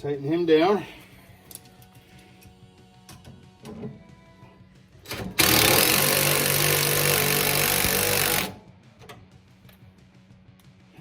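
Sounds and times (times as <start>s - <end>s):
power tool running: 5.4s - 8.6s.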